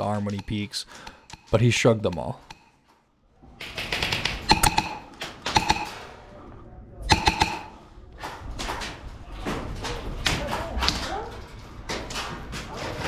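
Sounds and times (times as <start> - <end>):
airsoft guns firing bursts: 3.6 - 6.1, 7.1 - 7.9.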